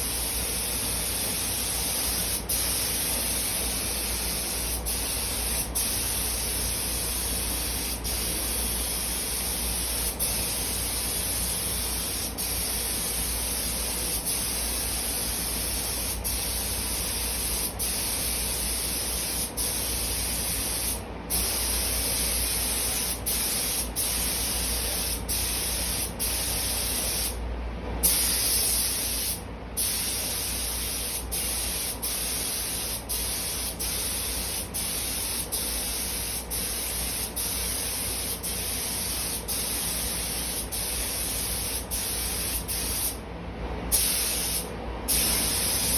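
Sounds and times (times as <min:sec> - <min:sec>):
paint spray gun hissing: 0:00.0 - 0:27.4, 0:28.0 - 0:43.2, 0:43.9 - 0:45.9
steady low hum: 0:00.0 - 0:45.9.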